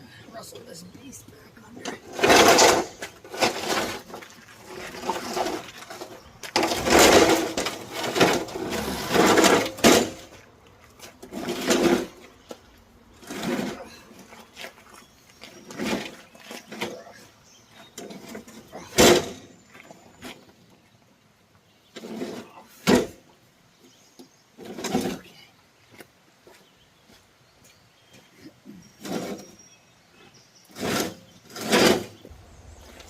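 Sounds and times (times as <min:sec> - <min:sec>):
mower deck scraping and clattering: 0:01.8 - 0:10.4, 0:11.0 - 0:12.5, 0:13.2 - 0:14.2, 0:15.5 - 0:17.2, 0:29.0 - 0:29.5, 0:30.7 - 0:33.0.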